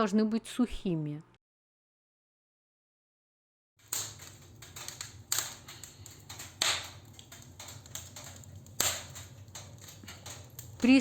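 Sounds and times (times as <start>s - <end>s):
wood fire crackling: 3.8s - 11.0s.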